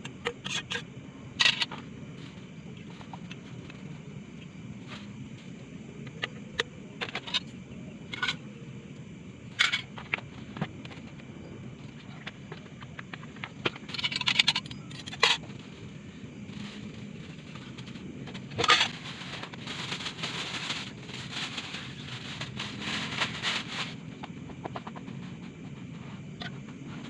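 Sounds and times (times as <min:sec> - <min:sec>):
packaging crinkling and rustling: 0:16.6 - 0:24.1.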